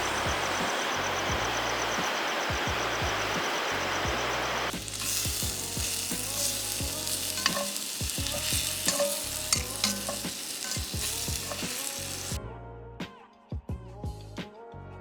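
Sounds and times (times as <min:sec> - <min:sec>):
food sizzling and crackling: 0:00.0 - 0:12.4
background music with bass: 0:04.0 - 0:15.0.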